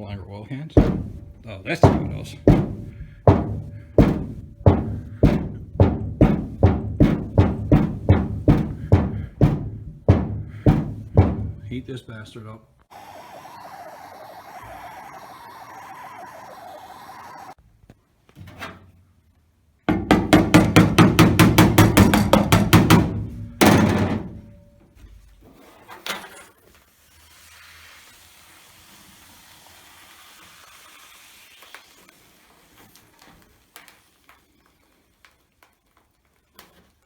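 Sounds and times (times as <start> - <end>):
hammer blows on sheet metal: 0.8 - 11.8, 19.9 - 24.6.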